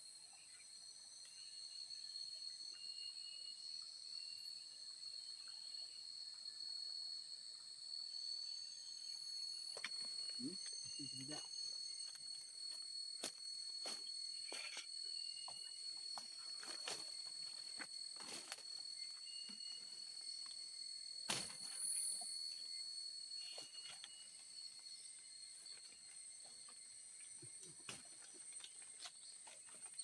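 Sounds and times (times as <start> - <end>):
forest insects chorus: 0.0 - 30.0.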